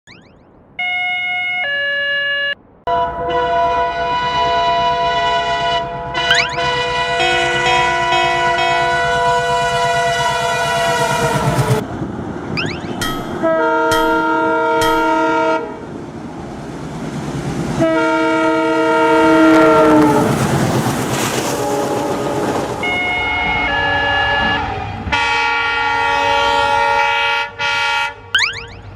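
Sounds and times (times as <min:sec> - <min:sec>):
train horn blasts: 0:00.8 - 0:11.8, 0:13.4 - 0:15.9, 0:17.8 - 0:20.4, 0:21.5 - 0:28.3
train wheels clattering: 0:13.0 - 0:15.4.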